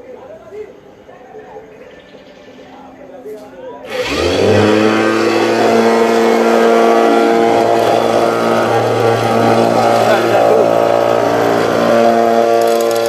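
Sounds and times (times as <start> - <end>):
motor driving cutting wheel whine: 3.8 - 13.0.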